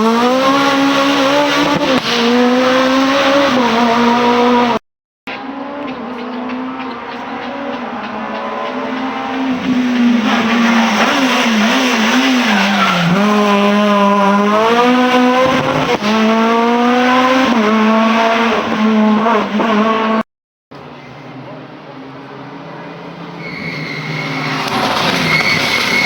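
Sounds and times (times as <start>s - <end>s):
rally car engine revving: 0.0s - 20.2s, 20.8s - 26.0s
tyres squealing: 23.4s - 26.0s.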